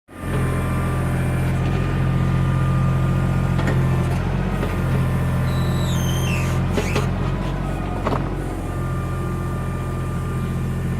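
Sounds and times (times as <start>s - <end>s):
backhoe engine running: 0.1s - 10.9s
high squeal stepping down: 5.4s - 7.1s.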